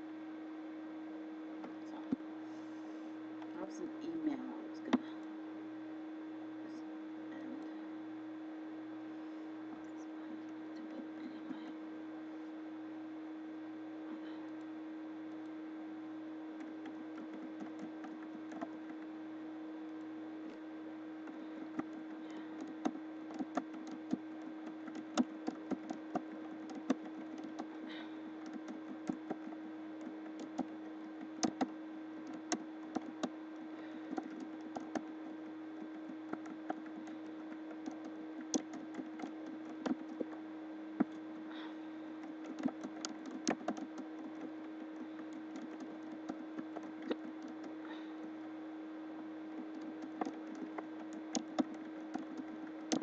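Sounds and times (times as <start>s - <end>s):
electrical hum: 0.0s - 53.0s
keyboard key clicks: 21.7s - 27.8s, 28.4s - 33.4s, 35.8s - 40.4s, 42.2s - 47.8s, 49.6s - 53.0s.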